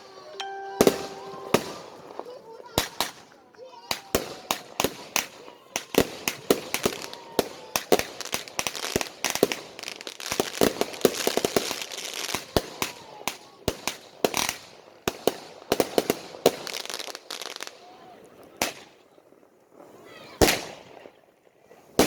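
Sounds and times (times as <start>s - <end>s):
fireworks bangs and pops: 3.9s - 17.8s.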